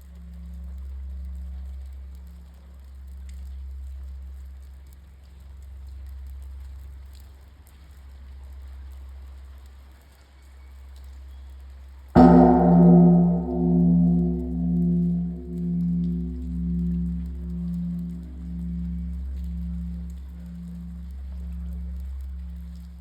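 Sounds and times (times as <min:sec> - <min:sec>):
temple bell ringing: 0:12.2 - 0:23.0.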